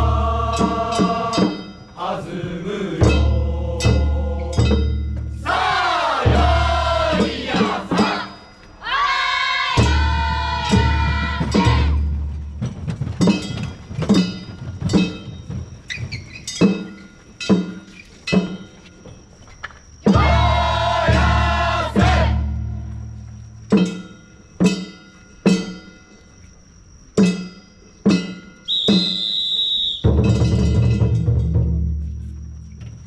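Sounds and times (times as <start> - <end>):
drum and bell strikes: 0.0 - 8.6, 9.7 - 15.8, 16.4 - 18.8, 20.1 - 26.2, 27.2 - 28.7, 30.1 - 32.3
men shouting sliding calls: 5.4 - 11.9.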